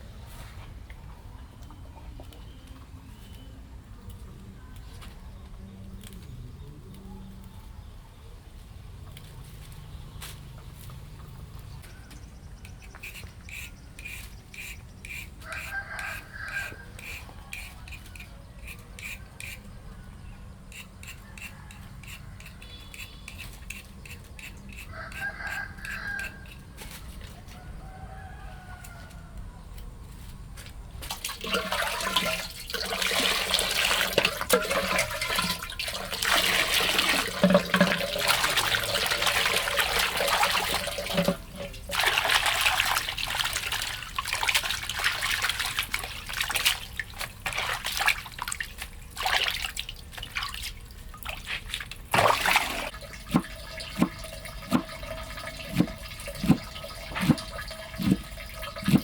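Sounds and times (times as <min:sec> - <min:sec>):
water running and splashing: 0:31.1 - 0:59.0.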